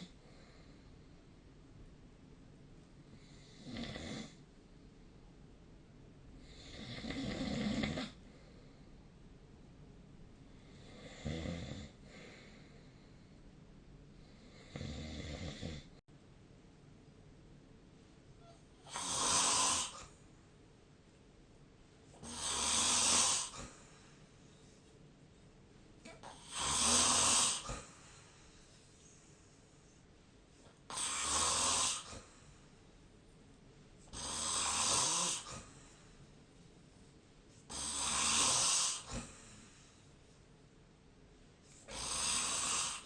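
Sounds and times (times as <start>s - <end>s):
person snoring: 18.4s - 20.1s, 22.2s - 23.9s, 26.1s - 28.2s, 30.9s - 32.3s, 34.1s - 35.9s, 37.7s - 39.8s, 41.8s - 43.0s.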